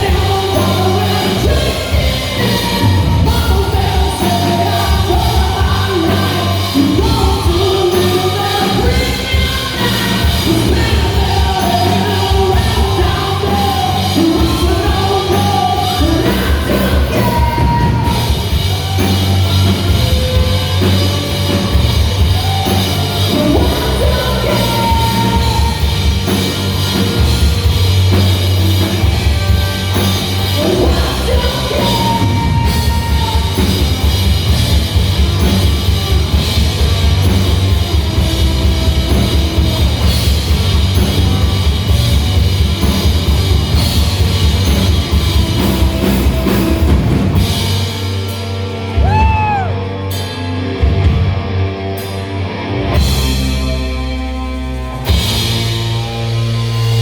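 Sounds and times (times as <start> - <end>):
person singing lead vocal: 0.0 - 34.6
rock band playing: 0.0 - 57.0.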